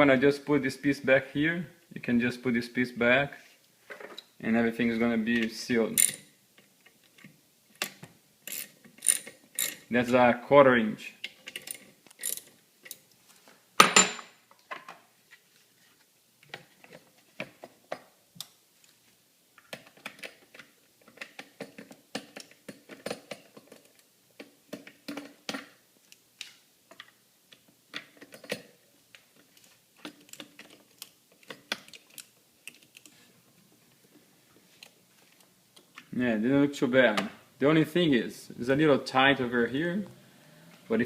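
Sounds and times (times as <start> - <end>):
metal tools clicking and clinking: 6.0 - 6.3, 7.8 - 9.9, 11.2 - 13.0, 13.8 - 14.4.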